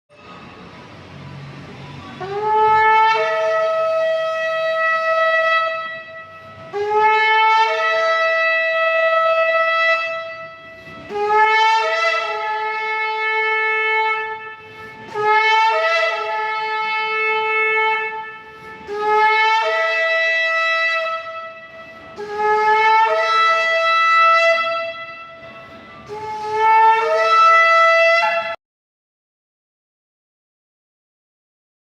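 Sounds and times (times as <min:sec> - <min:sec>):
ram's horn blasts: 0:02.0 - 0:28.6
breaths: 0:10.6 - 0:11.1, 0:14.6 - 0:15.1, 0:18.3 - 0:18.9, 0:21.6 - 0:22.2.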